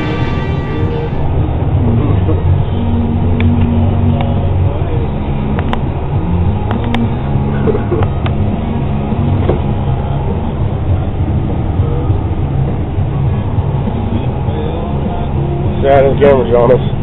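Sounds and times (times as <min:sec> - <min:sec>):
combine harvester droning: 0:00.0 - 0:02.0.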